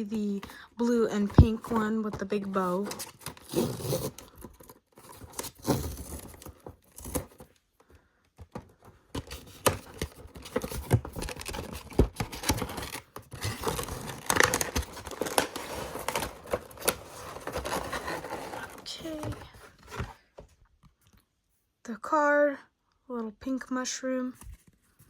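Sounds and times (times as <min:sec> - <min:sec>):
packaging rustling and crinkling: 0:00.0 - 0:07.6, 0:08.5 - 0:20.2.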